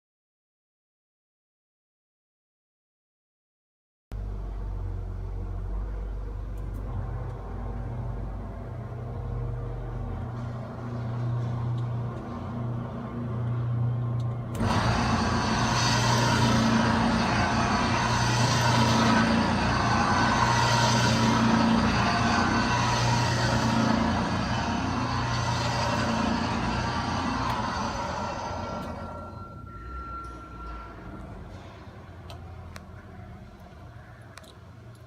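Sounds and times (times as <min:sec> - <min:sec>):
blender motor running: 0:14.6 - 0:29.4.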